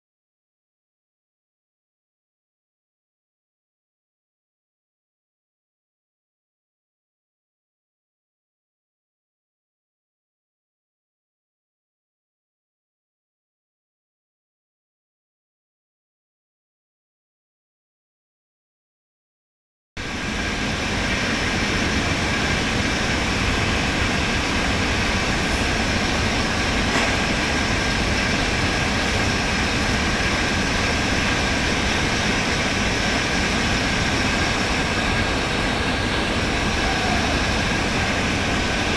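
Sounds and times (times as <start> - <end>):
welding arc hissing: 20.1 - 38.9.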